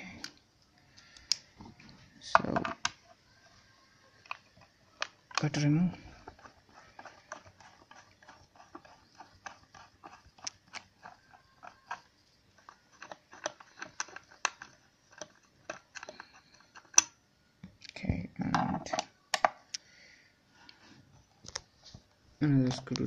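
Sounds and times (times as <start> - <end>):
screwdriver clicking and creaking: 0.2 - 3.2, 4.2 - 17.2.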